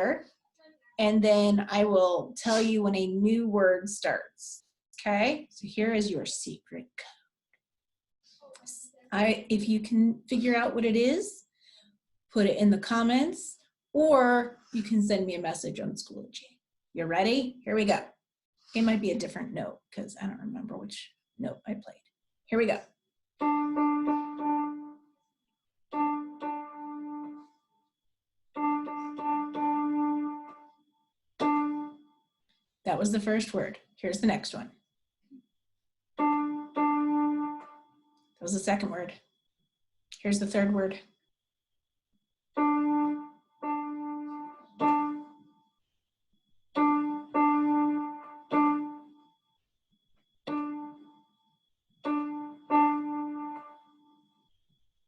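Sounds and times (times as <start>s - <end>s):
electronic keyboard morse code notes: 23.4s - 25.0s, 25.9s - 27.5s, 28.6s - 30.7s, 31.4s - 32.1s, 36.2s - 37.9s, 42.6s - 45.4s, 46.8s - 49.2s, 50.4s - 51.3s, 52.0s - 54.1s.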